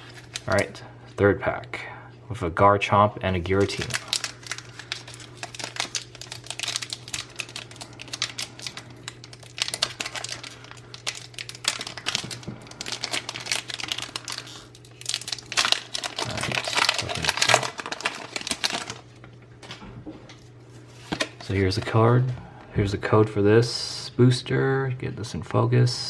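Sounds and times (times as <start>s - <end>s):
foil wrapper crinkling and tearing: 0.0s - 0.8s, 3.5s - 19.2s.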